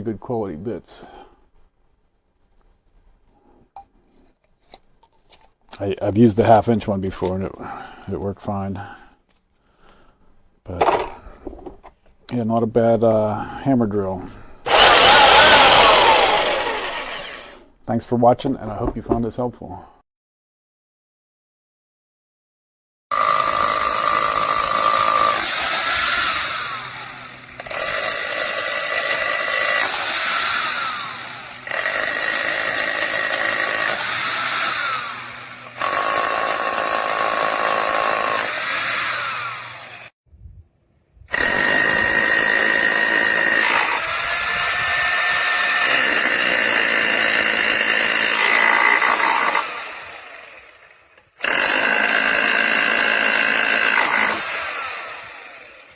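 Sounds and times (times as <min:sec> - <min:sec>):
rotary hammer drill: 0:10.8 - 0:11.2, 0:14.7 - 0:17.7, 0:23.1 - 0:40.2, 0:41.3 - 0:55.9.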